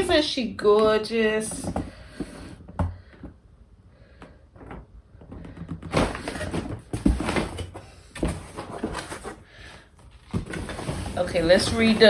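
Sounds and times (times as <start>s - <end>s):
loud packaging rustling: 5.8s - 12.0s.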